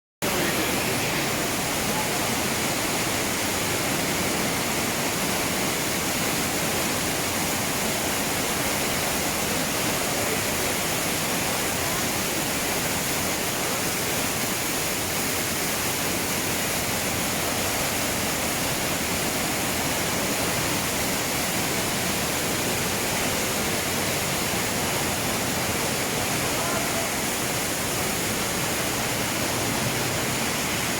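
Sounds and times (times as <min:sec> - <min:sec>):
waterfall rushing: 0:00.2 - 0:30.9.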